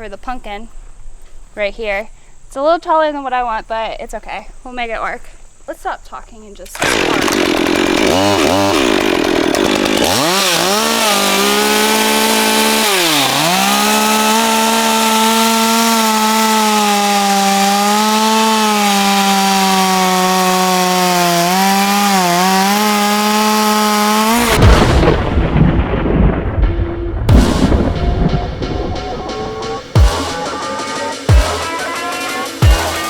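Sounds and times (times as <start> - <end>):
chainsaw cutting into wood: 6.7 - 25.3.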